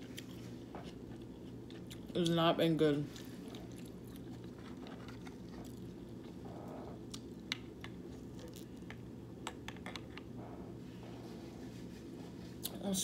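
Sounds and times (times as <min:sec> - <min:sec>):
person chewing food: 0:00.0 - 0:02.2, 0:03.1 - 0:10.4
steady low hum: 0:00.0 - 0:13.0.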